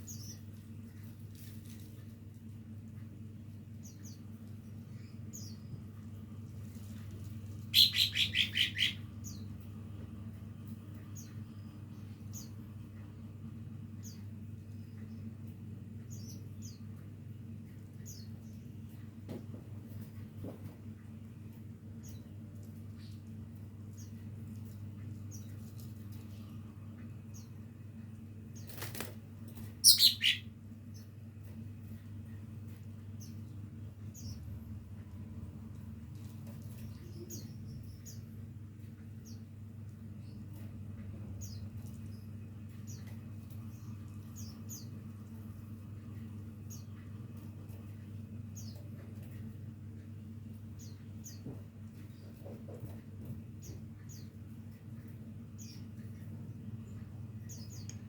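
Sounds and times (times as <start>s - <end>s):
low hum: 0.0s - 52.1s
bird chirping: 7.7s - 9.5s, 29.8s - 30.5s.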